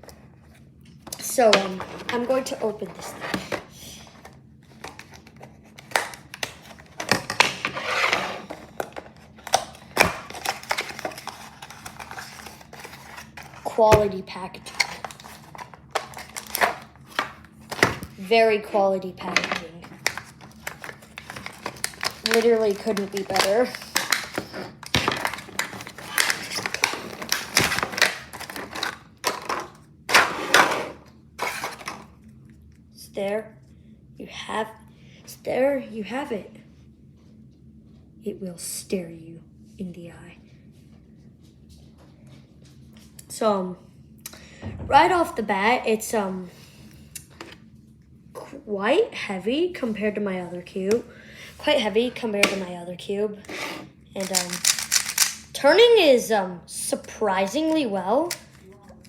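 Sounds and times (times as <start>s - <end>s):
plastic packaging crinkling: 4.2s - 14.0s, 14.6s - 18.2s, 19.4s - 30.3s, 54.2s - 55.6s
plastic packaging clicks and snaps: 4.8s - 7.4s, 8.8s - 13.5s, 14.7s - 18.1s, 19.8s - 30.3s, 54.2s - 55.6s, 58.2s - 58.7s.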